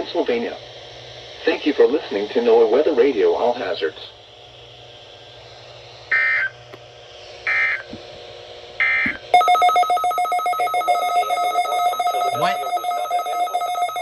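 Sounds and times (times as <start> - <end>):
pulsing electronic alarm buzz: 6.1 - 6.5, 7.5 - 7.8, 8.8 - 14.0
screeching digital header tones: 8.8 - 14.0.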